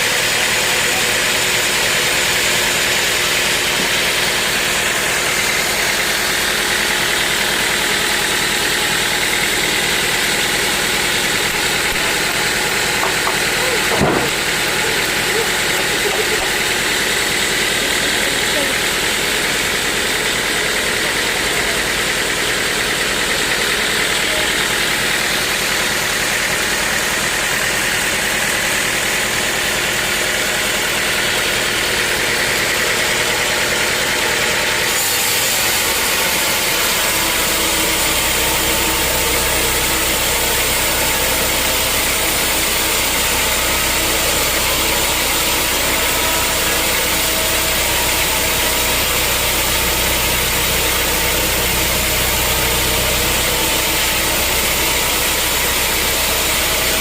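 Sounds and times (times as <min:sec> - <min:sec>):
sawmill machinery humming: 0:00.0 - 0:57.0
deep steady hum: 0:03.6 - 0:19.9, 0:36.6 - 0:57.0.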